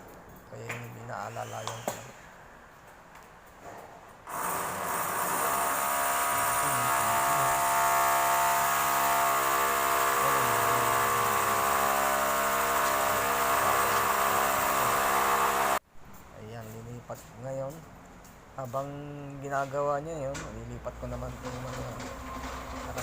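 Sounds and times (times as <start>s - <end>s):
power tool motor whine: 4.3s - 15.8s.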